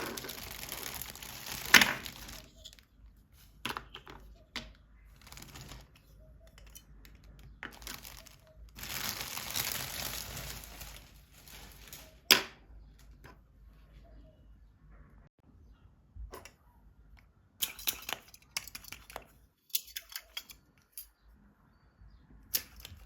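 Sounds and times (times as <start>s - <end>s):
packaging crinkling and rustling: 0.0s - 2.9s, 5.2s - 6.0s, 7.6s - 12.3s.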